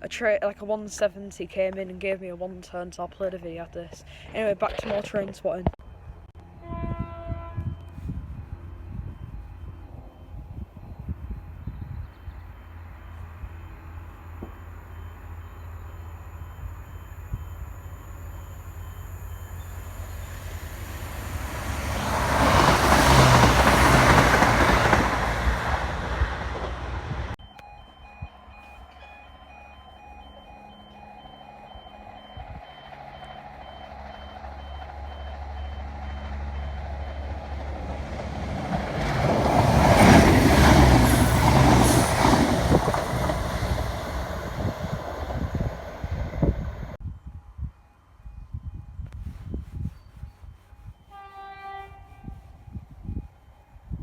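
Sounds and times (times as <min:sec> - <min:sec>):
low engine rumble: 0:00.0 - 0:47.0
trains passing: 0:00.0 - 0:47.0
electronic warning beeps: 0:07.6 - 0:21.3, 0:27.4 - 0:38.1.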